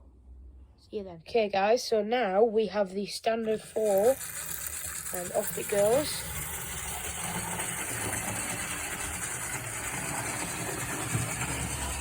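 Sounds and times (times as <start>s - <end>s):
model train motor humming: 3.5s - 12.0s.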